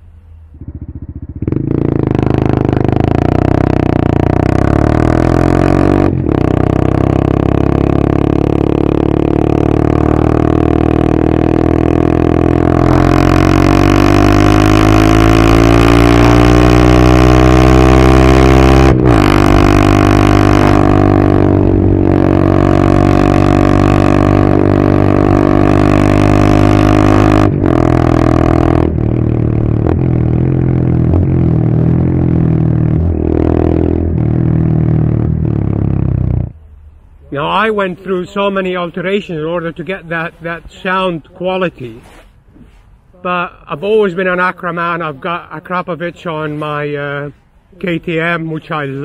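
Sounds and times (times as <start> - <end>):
motorcycle engine revving: 0.4 - 36.7.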